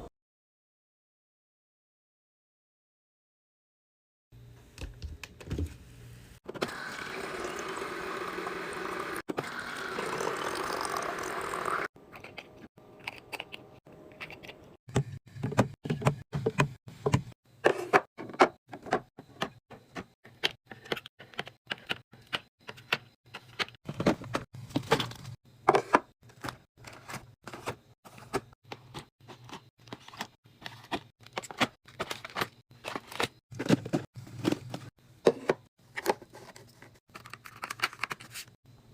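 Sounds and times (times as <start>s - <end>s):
liquid pouring into container: 6.8s - 11.9s.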